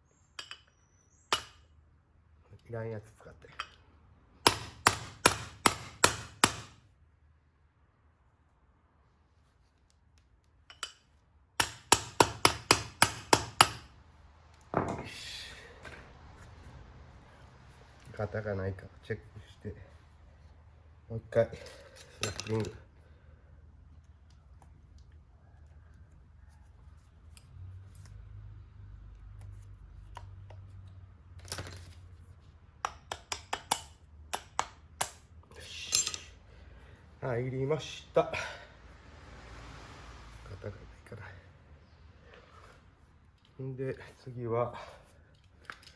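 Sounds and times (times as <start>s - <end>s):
hammer striking metal: 1.3s - 1.6s, 4.4s - 6.8s, 11.6s - 13.9s
metal clicks and scraping: 21.6s - 22.8s, 45.3s - 45.9s.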